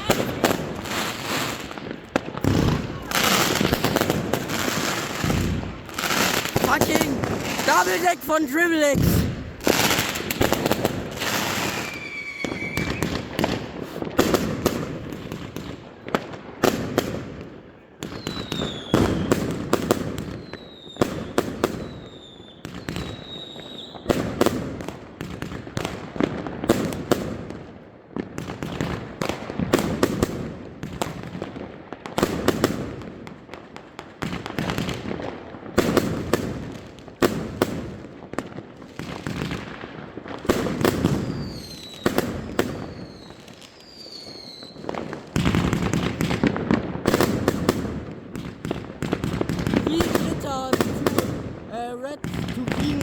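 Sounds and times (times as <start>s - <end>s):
fireworks crackle: 0.0s - 17.2s, 38.4s - 53.0s
fireworks bangs: 0.0s - 17.4s, 38.9s - 53.0s
falling whistles: 11.7s - 13.1s.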